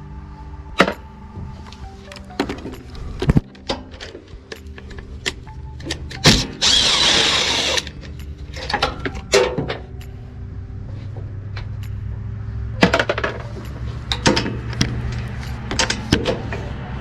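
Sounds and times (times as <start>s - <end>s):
hand tools clicking and clanking: 1.7s - 10.2s, 12.8s - 16.8s
power tool burst: 6.3s - 7.9s.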